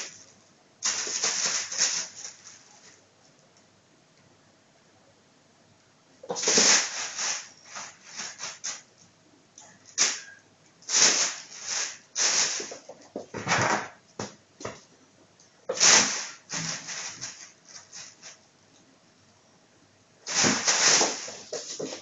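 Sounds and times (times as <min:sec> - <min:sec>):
plastic bag rustling: 0:00.0 - 0:03.1, 0:06.2 - 0:08.9, 0:10.0 - 0:13.9, 0:15.7 - 0:18.4, 0:20.3 - 0:22.0.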